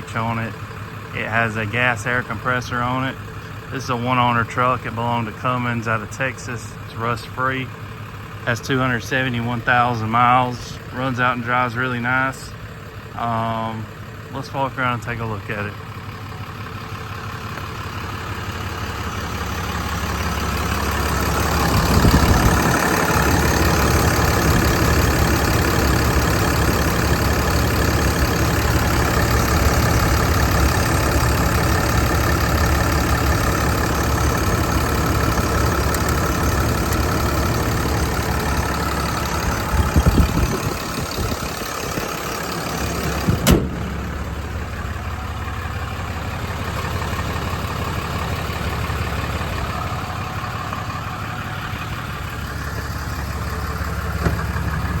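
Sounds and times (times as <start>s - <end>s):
diesel engine idling: 0.0s - 55.0s
brief thumps: 43.2s - 44.2s
sharp click: 43.3s - 44.0s.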